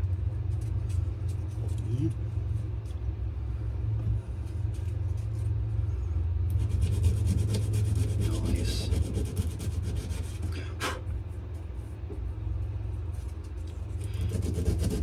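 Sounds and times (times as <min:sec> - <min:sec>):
steady low hum: 0:00.0 - 0:15.0
sandpaper scraping knife handle: 0:06.6 - 0:10.4.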